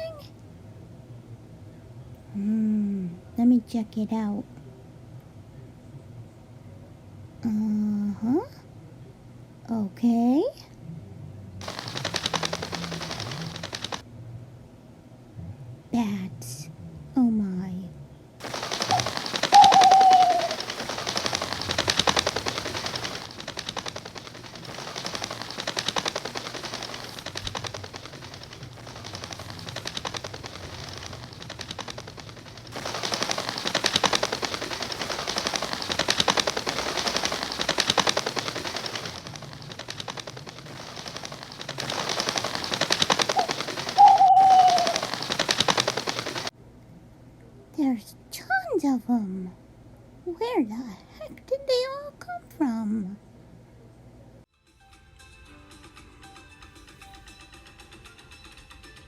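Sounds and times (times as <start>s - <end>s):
bats chattering and squeaking: 11.6s - 14.0s, 18.4s - 46.5s
bat falling call: 18.9s - 20.7s.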